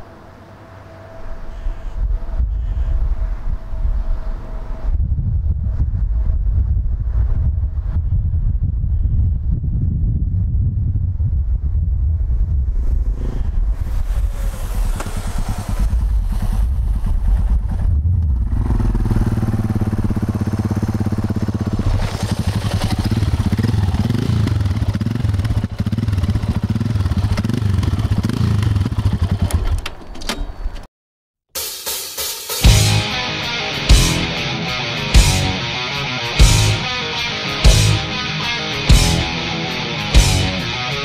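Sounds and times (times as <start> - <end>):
motorcycle engine revving: 13.2 - 29.8.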